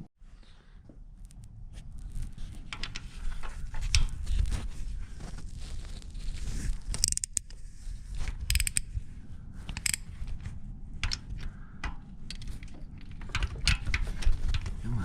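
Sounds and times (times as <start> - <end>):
metallic clicks of hand tools: 6.9 - 7.6, 8.5 - 8.9, 9.6 - 10.1.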